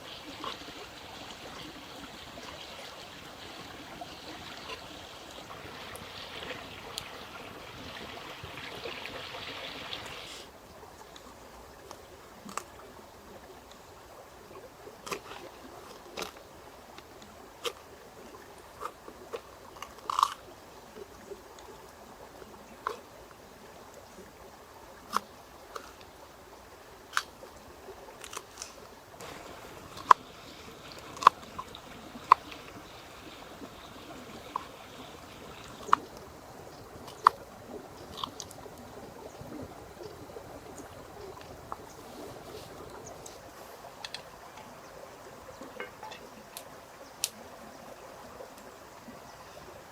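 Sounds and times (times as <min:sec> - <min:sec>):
faint steady hiss: 0:00.0 - 0:49.9.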